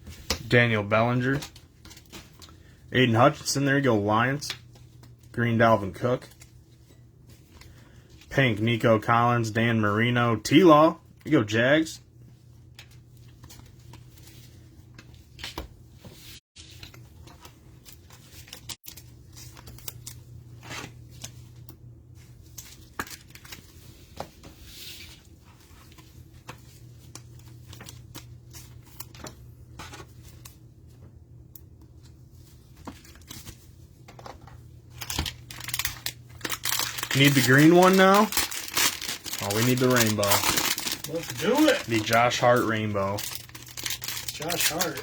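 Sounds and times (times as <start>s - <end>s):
wrapper rustling: 34.9s - 45.0s.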